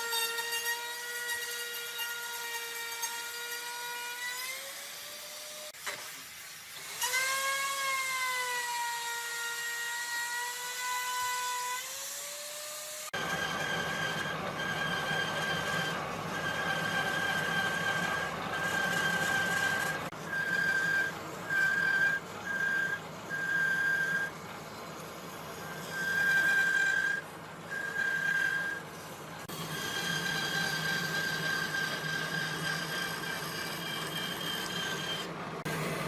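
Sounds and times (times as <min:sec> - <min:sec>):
power tool motor whining: 0:12.2 - 0:24.3, 0:29.4 - 0:36.0
rough machine with high whine: 0:12.2 - 0:36.0.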